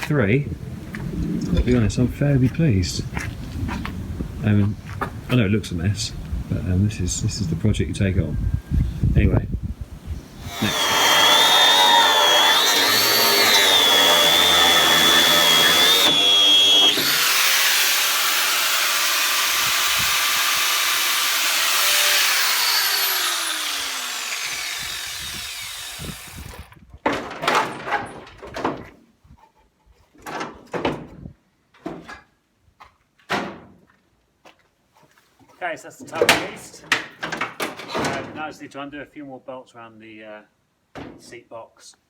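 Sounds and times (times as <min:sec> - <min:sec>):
angle grinder cutting steel: 0:10.4 - 0:26.7
metallic knocks and clatter: 0:27.0 - 0:29.0.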